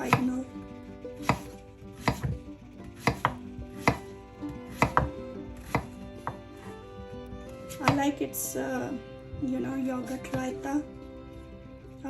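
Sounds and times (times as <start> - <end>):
knife chopping on cutting board: 0.0 - 0.4, 1.2 - 2.4, 3.0 - 4.1, 4.7 - 6.6, 7.7 - 8.1.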